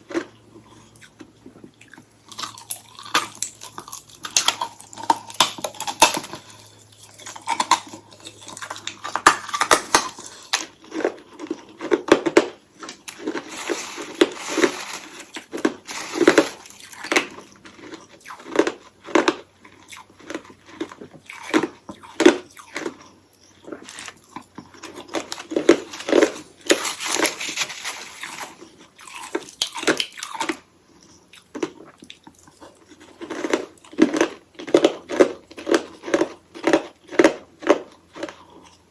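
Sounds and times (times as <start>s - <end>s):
crunching ice while chewing: 0.0s - 38.9s.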